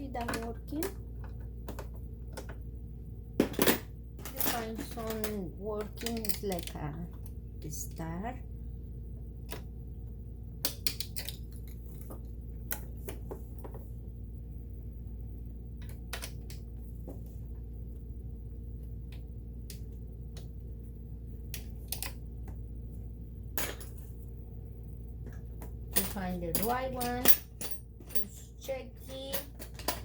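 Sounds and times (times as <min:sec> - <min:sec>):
steady low hum: 0:00.0 - 0:30.0
small tools clicking and clinking: 0:03.7 - 0:06.9, 0:10.7 - 0:11.8, 0:29.1 - 0:30.0.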